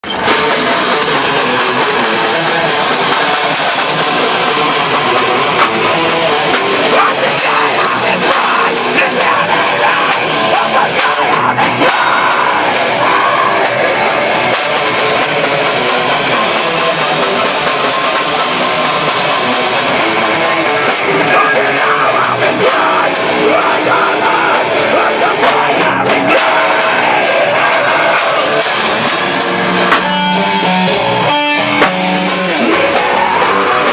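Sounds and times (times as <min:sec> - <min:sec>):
heavy metal band playing: 0:00.0 - 0:33.9.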